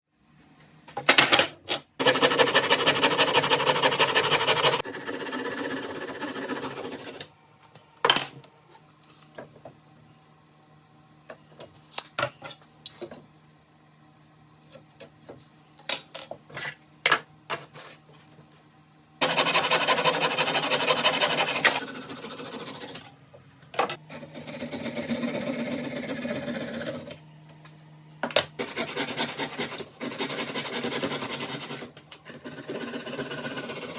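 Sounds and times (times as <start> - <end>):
power tool cutting wood: 19.2 - 23.0.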